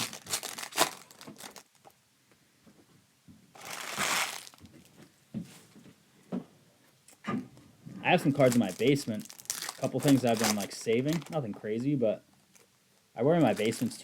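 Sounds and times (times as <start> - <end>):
card pack wrapper crinkling: 0.0 - 1.9, 3.6 - 4.6, 8.2 - 12.7, 13.4 - 14.0.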